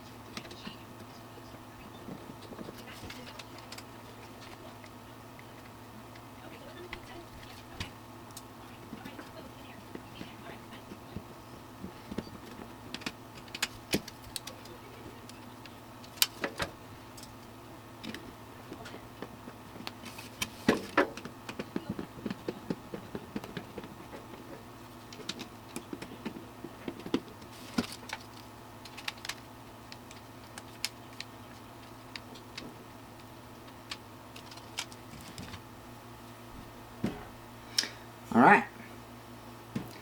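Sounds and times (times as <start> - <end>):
faint steady hum: 0.0 - 40.0
hands clicking computer parts: 2.4 - 9.4, 12.1 - 17.4, 18.0 - 35.6.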